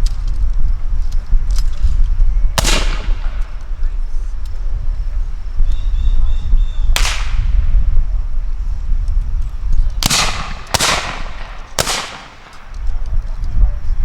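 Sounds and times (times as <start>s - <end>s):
musket shots: 2.6s - 3.6s, 7.0s - 7.4s, 10.0s - 12.8s.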